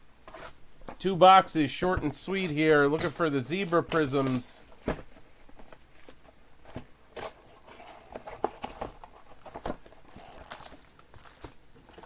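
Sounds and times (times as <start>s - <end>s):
plastic wrapping crinkling and tearing: 3.0s - 6.2s, 7.2s - 12.0s.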